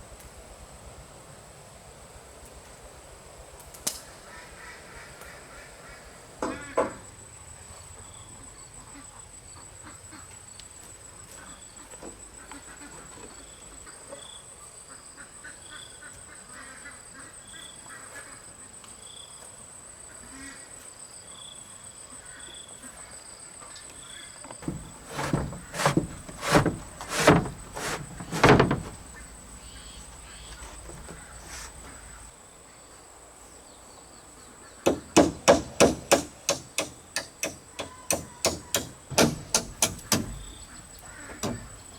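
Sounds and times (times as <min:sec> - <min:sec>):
hammer strikes: 0:24.6 - 0:32.2, 0:34.9 - 0:41.8.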